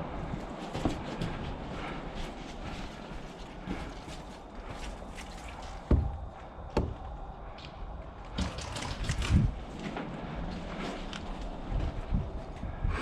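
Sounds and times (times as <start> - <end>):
dull thumps: 5.8 - 7.1.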